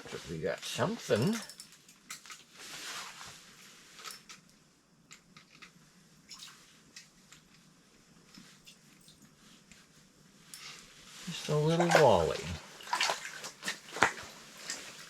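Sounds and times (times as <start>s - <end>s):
small clicks and knocks: 4.0s - 5.8s
water splashing and dripping: 11.3s - 15.0s.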